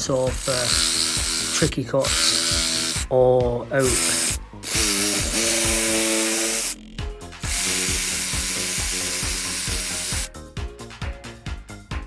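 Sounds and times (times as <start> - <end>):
jigsaw cutting wood: 0.0 - 3.1, 3.8 - 6.8, 7.4 - 10.3
background music with steady beat: 0.0 - 12.0.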